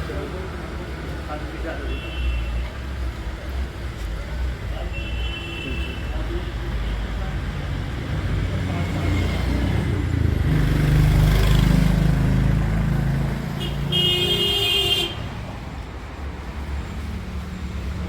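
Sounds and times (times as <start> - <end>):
vehicle engine passing: 8.0 - 13.8
vehicle horn honking: 13.6 - 15.3.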